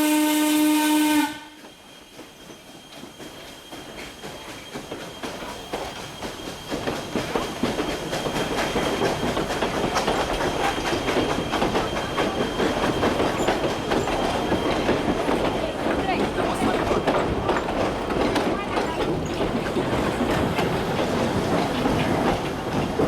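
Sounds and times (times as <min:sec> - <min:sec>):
train wheels clattering over rails: 0:01.2 - 0:23.0.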